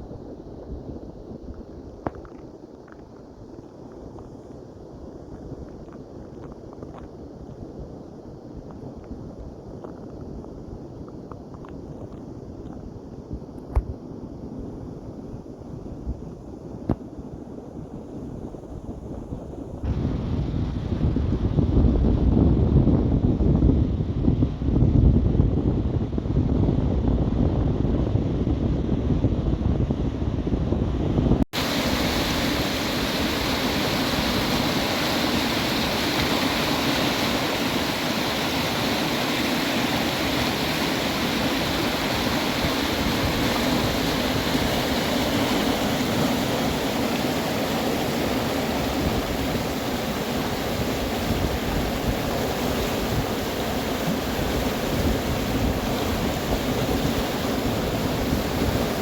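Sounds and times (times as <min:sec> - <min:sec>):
wind blowing on microphone: 0:00.0 - 0:59.0
rushing white water rapids: 0:31.6 - 0:59.0.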